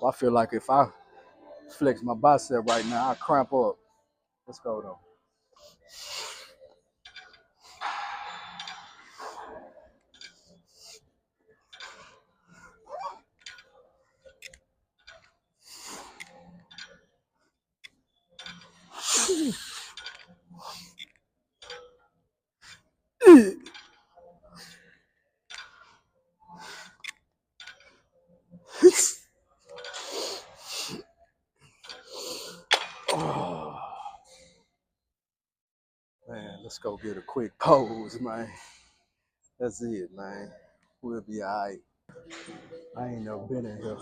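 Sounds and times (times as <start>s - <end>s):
heavy breathing: 23.2s - 23.6s
man groaning while lifting: 23.2s - 23.6s, 28.8s - 29.2s, 33.1s - 34.1s.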